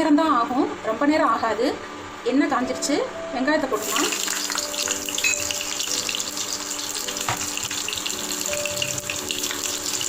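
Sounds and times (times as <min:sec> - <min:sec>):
soft background music: 0:00.0 - 0:10.0
shallot sizzling in oil: 0:03.8 - 0:10.0.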